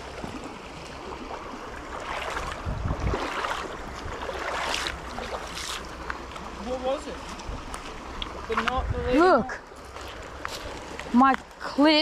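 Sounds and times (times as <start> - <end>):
creek running: 0.0 - 12.0
wind on microphone: 2.2 - 5.4, 7.4 - 9.5.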